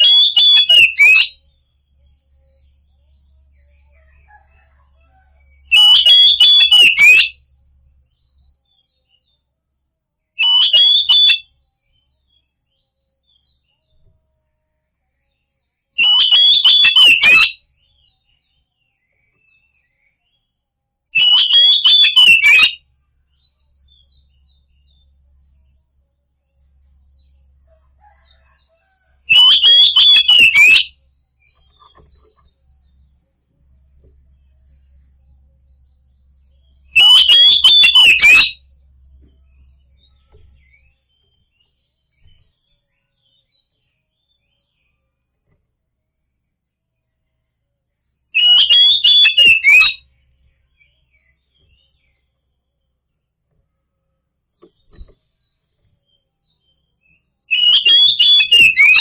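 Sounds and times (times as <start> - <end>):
bird song whistles and clicks: 0.0 - 1.5, 3.6 - 7.4, 10.4 - 12.0, 16.0 - 18.1, 21.2 - 22.8, 28.1 - 33.0, 36.6 - 42.5, 48.4 - 50.2, 54.6 - 59.0
faint bird chirps: 0.0 - 45.6, 46.2 - 59.0.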